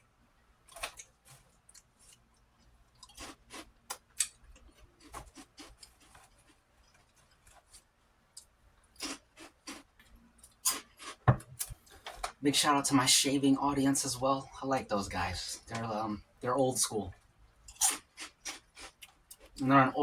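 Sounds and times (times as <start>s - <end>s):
crackers being crunched and chewed: 0.6s - 11.7s, 17.7s - 19.7s.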